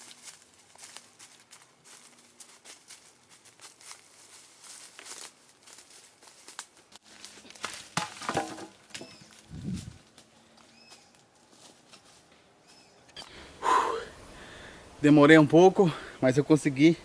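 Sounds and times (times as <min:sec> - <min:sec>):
dry leaves rustling: 0:00.0 - 0:13.0
branches snapping: 0:04.7 - 0:10.3.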